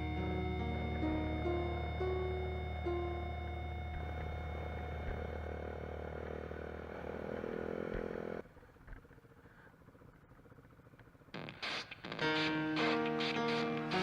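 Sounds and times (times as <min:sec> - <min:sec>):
engine humming: 0:00.0 - 0:09.6.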